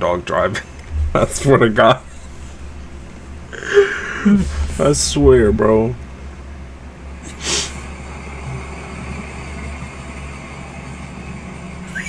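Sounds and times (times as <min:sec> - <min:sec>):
car interior rumble: 0:00.0 - 0:12.0
short hiss: 0:07.3 - 0:07.8.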